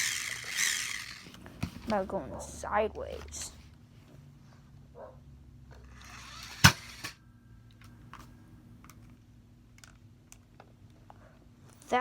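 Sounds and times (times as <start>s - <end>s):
rising whir: 0.0s - 1.4s, 5.9s - 7.2s
toy shooter sharp snap: 6.2s - 7.2s.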